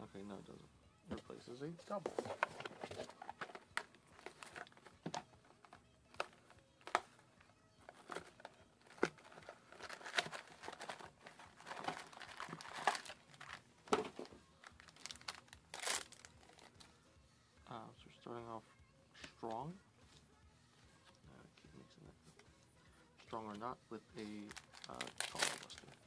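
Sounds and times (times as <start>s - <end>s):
cards being handled: 1.1s - 7.2s, 7.8s - 16.9s, 24.2s - 26.0s
foil wrappers crinkling: 7.9s - 16.7s, 24.2s - 26.0s.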